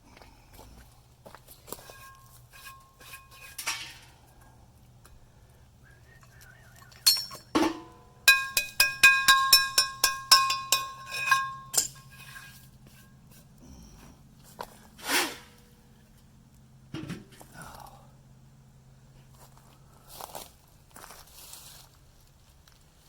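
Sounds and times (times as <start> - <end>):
metal clank: 1.8 - 4.2, 7.0 - 13.2, 16.9 - 17.4
sharp metal clinks: 7.0 - 12.6.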